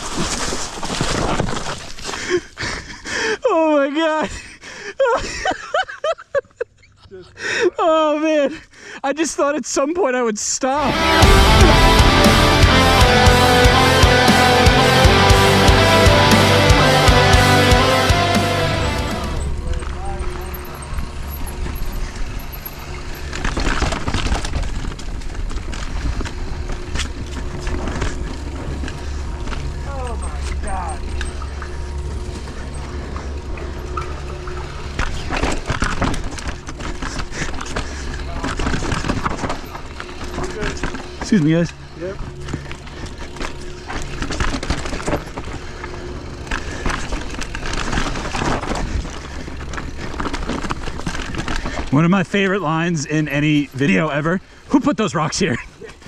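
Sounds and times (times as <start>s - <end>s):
bike rattling: 10.9s - 54.7s.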